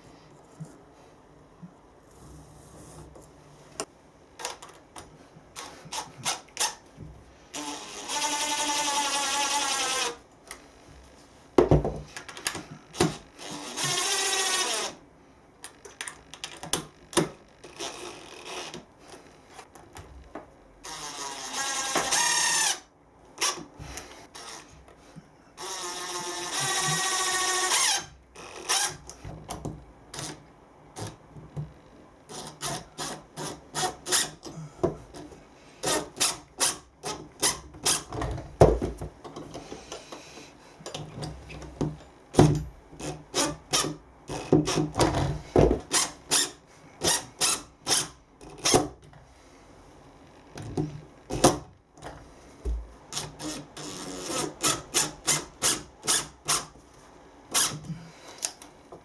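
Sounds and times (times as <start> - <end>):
power drill whining: 7.5 - 10.2, 13.4 - 15.0, 20.8 - 22.8, 25.6 - 29.0.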